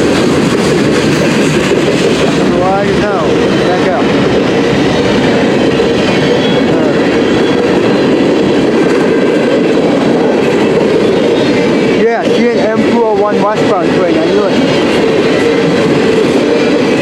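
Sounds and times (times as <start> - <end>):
freight train wheels rumbling: 0.0 - 17.0.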